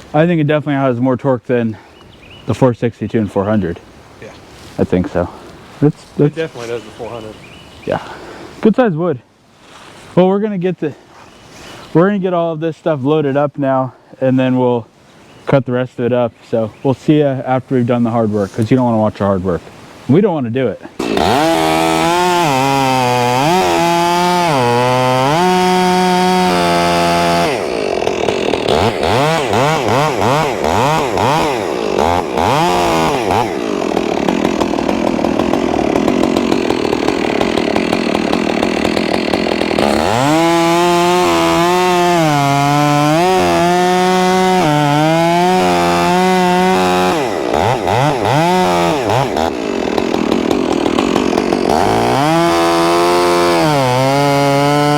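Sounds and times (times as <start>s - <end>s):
chainsaw cutting wood: 20.9s - 54.9s.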